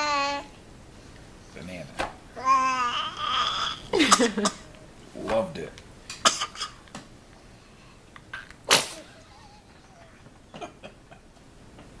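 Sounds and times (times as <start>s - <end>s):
baby sneezing: 6.2s - 6.8s, 8.7s - 9.1s.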